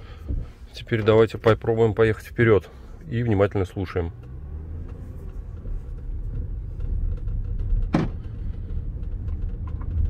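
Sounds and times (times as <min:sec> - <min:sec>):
car cabin rumble: 0:00.0 - 0:10.0
sharp interior creak: 0:03.9 - 0:10.0.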